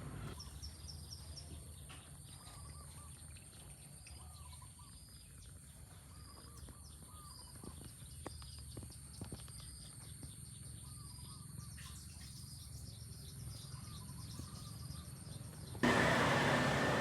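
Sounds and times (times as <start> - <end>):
mechanical hum and hiss: 15.8 - 17.0.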